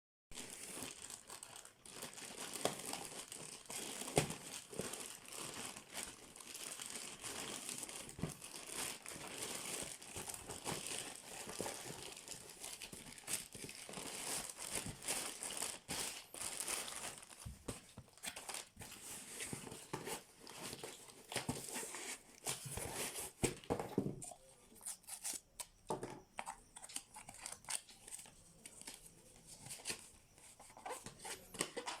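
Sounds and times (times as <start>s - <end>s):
packaging crinkling: 0.4s - 18.9s.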